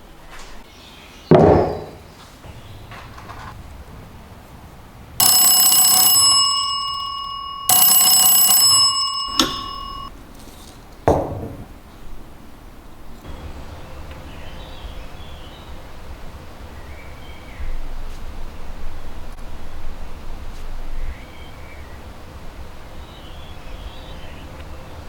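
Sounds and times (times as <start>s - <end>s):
sharp knocks: 1.3s - 2.1s, 9.3s - 10.1s, 11.1s - 11.8s
telephone bell ringing: 5.2s - 10.1s.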